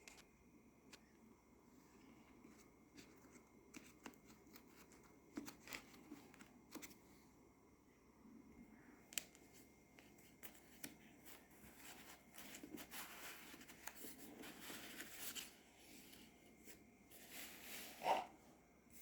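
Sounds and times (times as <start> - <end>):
card and paper rustling: 2.0 - 7.1, 9.2 - 18.2.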